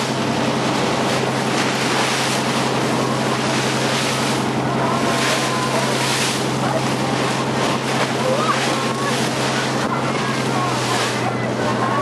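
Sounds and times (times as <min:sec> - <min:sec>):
boat engine humming: 0:00.0 - 0:12.0
water spray against hull: 0:00.0 - 0:12.0.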